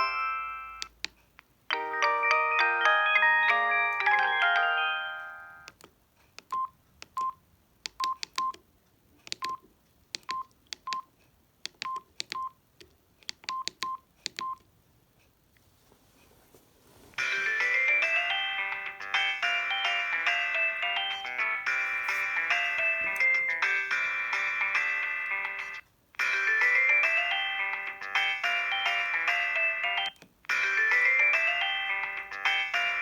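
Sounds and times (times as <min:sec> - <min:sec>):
polyphonic phone ringtone: 0:00.0 - 0:00.9, 0:01.7 - 0:05.7, 0:17.2 - 0:33.0
phone keypress clicks and beeps: 0:00.7 - 0:01.2, 0:05.6 - 0:08.6, 0:09.2 - 0:14.7.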